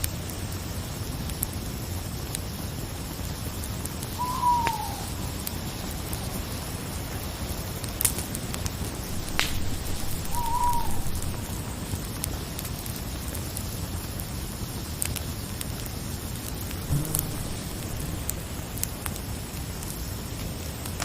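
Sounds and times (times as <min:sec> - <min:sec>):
campfire hissing and crackling: 0:00.0 - 0:21.0
owl hooting: 0:04.1 - 0:05.4, 0:09.1 - 0:11.6, 0:16.9 - 0:18.5.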